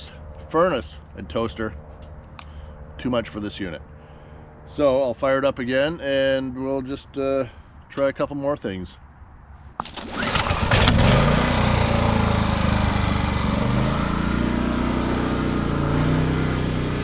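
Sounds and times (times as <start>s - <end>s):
generator engine running: 9.8s - 17.0s.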